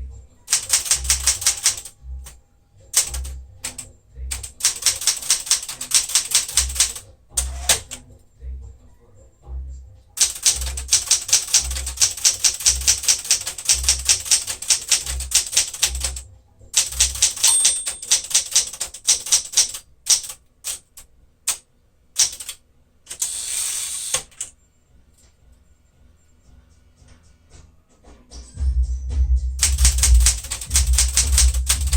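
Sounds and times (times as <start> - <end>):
typewriter bell ding: 0.5 - 1.9, 3.0 - 8.0, 10.2 - 16.2, 16.8 - 20.3, 29.6 - 31.9
typewriter carriage return rattle: 0.5 - 2.0, 3.0 - 8.0, 10.2 - 16.2, 16.8 - 21.6, 22.2 - 24.5, 29.6 - 31.9
typewriter keystrokes: 0.5 - 2.4, 3.0 - 8.0, 10.2 - 16.2, 16.8 - 21.6, 22.2 - 24.5, 29.6 - 31.9.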